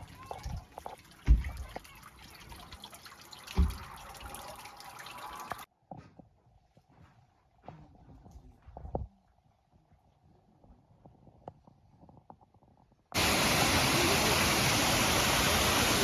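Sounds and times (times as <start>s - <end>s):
water trickling and dripping: 0.0s - 5.7s.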